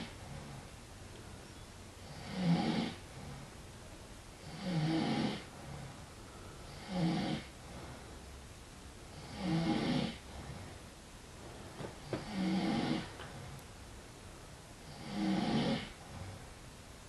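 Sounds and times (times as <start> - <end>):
man snoring: 0.0 - 0.6, 2.0 - 3.4, 4.4 - 6.0, 6.7 - 7.6, 9.1 - 10.7, 12.1 - 13.1, 14.9 - 16.4
quiet breathing: 0.0 - 16.7.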